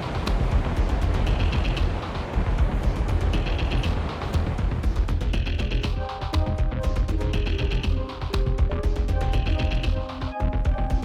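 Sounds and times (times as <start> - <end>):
music with heavy bass beat: 0.0 - 11.0.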